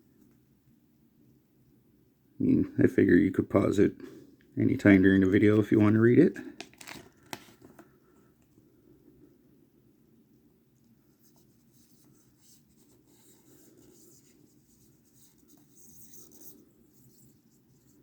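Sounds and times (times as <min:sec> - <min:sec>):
paper rustling and scratching: 0:06.6 - 0:07.8, 0:11.2 - 0:18.0.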